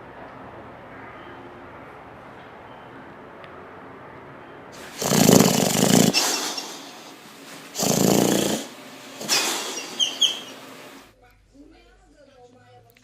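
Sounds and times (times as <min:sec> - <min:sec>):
dog snoring: 0:04.8 - 0:10.6
short high whistles: 0:09.3 - 0:10.6.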